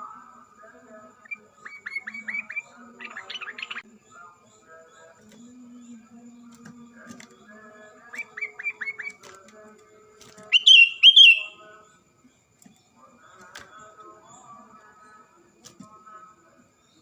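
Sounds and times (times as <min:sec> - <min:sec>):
bird whistling rising notes: 0:10.5 - 0:11.6
loud high bird notes: 0:10.5 - 0:11.6.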